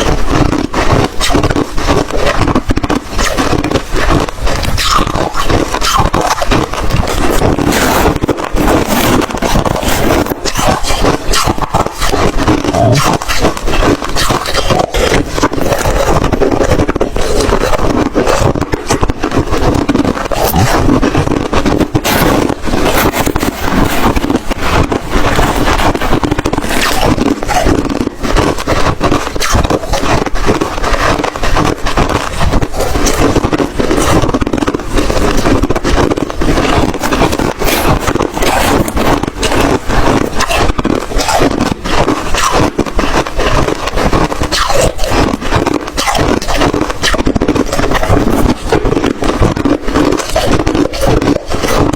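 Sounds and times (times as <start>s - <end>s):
chewing crunchy ice: 0.0s - 51.9s.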